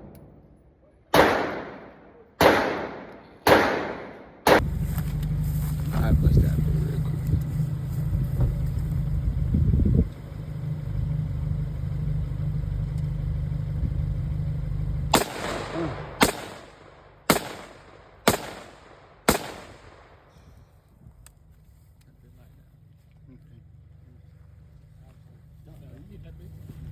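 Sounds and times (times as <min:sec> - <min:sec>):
sharp rifle shots: 0:00.0 - 0:04.7, 0:15.1 - 0:20.4
steady low rumble: 0:00.0 - 0:26.9.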